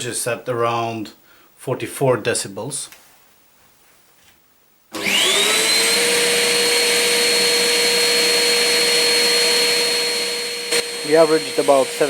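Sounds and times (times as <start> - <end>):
dust extractor running: 4.9 - 12.0.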